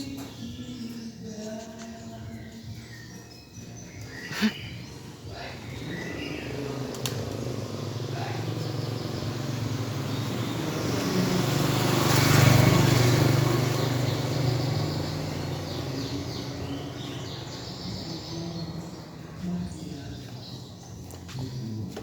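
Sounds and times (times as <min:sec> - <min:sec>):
vehicle passing by: 0:04.8 - 0:21.8.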